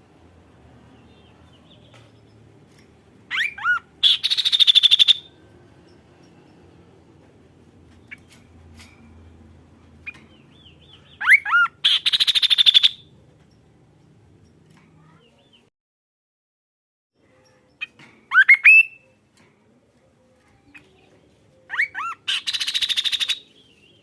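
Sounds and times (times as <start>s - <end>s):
bird song with buzzy trill: 3.3s - 6.8s, 10.0s - 15.7s, 17.2s - 19.2s, 20.6s - 24.0s
faint bird chirps: 17.2s - 19.3s.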